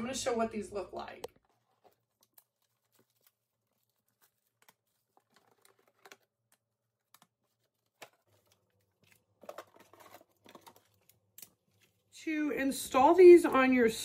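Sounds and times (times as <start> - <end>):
small plastic clicks and rustles: 1.2 - 12.0.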